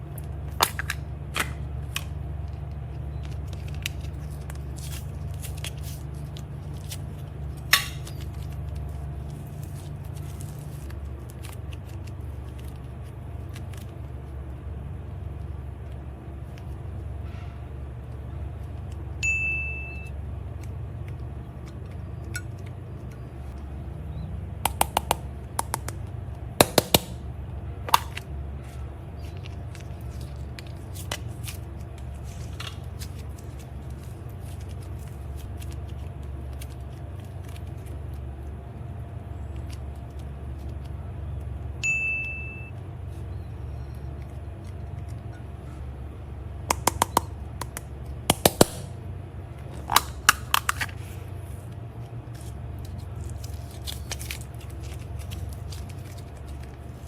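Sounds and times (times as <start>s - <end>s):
steady low hum: 0.0s - 57.0s
short high beep: 19.2s - 20.1s, 41.8s - 42.7s
slime clicking and popping: 24.7s - 26.0s, 46.7s - 48.9s.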